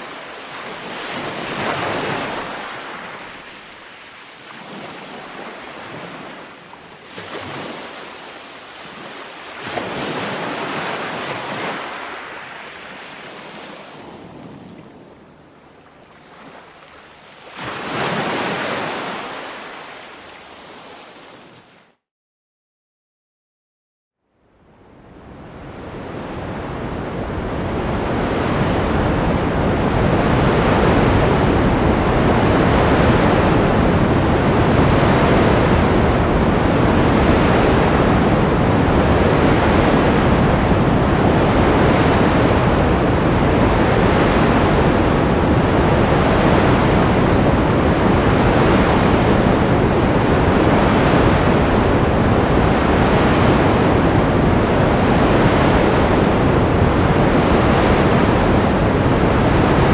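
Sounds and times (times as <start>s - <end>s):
ocean waves breaking: 0.0s - 21.9s, 25.2s - 59.9s.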